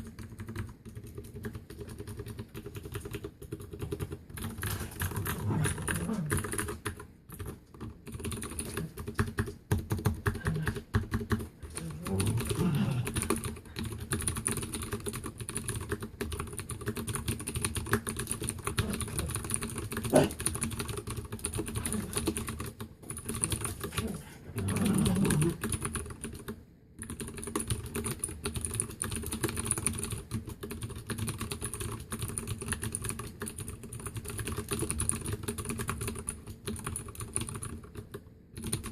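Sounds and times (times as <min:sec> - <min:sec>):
clicky keyboard typing: 0:00.0 - 0:38.9.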